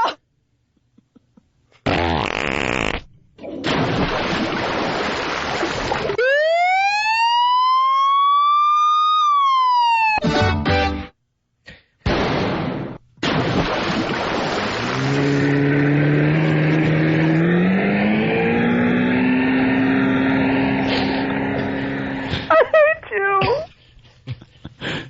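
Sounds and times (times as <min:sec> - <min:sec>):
buzzing fart-like blast: 0:01.8 - 0:03.1
siren-like whistling tone: 0:06.2 - 0:10.2.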